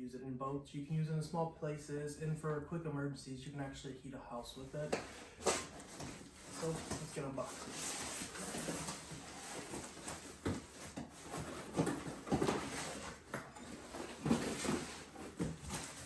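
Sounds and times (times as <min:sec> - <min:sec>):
cardboard box rustling and scraping: 0:04.8 - 0:16.0.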